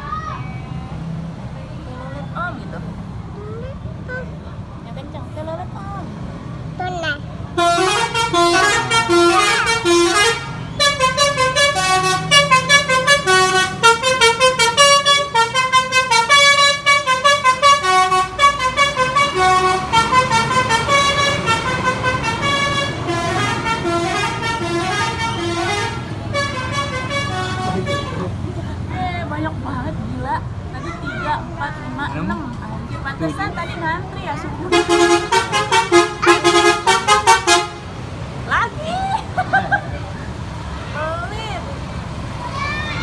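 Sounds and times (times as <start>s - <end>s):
bus engine rumble: 0.0s - 43.0s
musical bus air horn: 7.6s - 28.4s, 34.7s - 38.0s.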